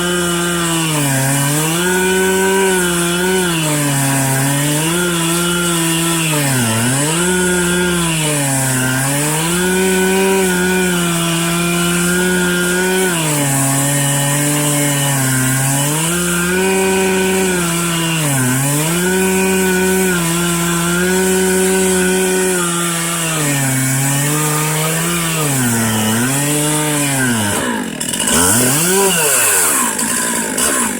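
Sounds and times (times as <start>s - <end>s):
chainsaw cutting log: 0.0s - 30.9s.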